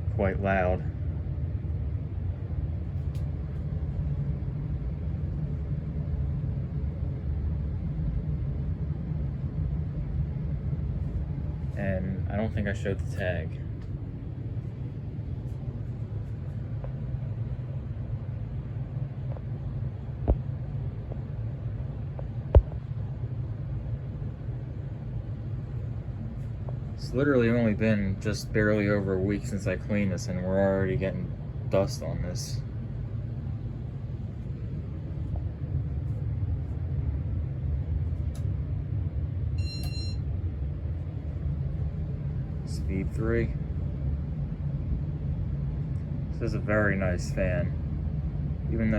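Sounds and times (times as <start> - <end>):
ceiling fan running: 0.0 - 48.9
hvac system rumbling: 0.0 - 48.9
high beep: 39.6 - 40.2.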